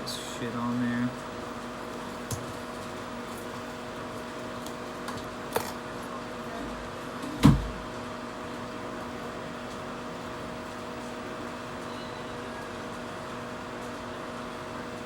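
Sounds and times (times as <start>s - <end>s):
electrical hum of equipment: 0.0s - 15.0s.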